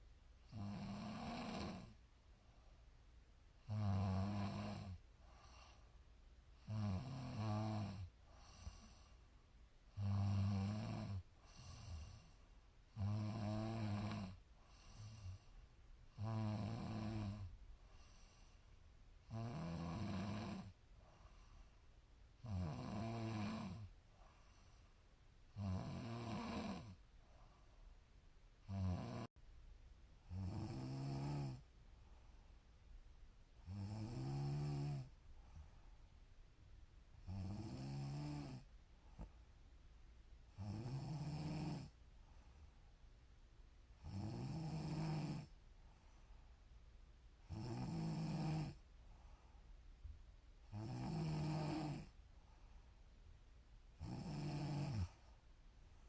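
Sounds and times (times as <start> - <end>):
quiet breathing: 0.0 - 56.0
woman snoring: 0.5 - 2.0, 3.6 - 5.8, 6.6 - 9.1, 9.9 - 15.5, 16.1 - 18.5, 19.3 - 20.8, 22.4 - 23.9, 25.5 - 27.0, 28.6 - 29.3, 30.3 - 31.7, 33.6 - 35.1, 37.2 - 38.7, 40.5 - 42.0, 44.0 - 45.5, 47.4 - 48.8, 50.7 - 52.2, 54.0 - 55.2.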